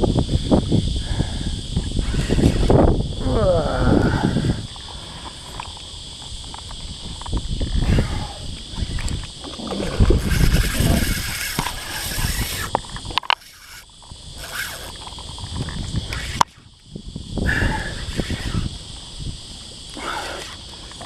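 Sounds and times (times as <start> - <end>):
wind gusting across microphone: 0.0 - 21.0
water sloshing around a kayak: 8.3 - 16.4.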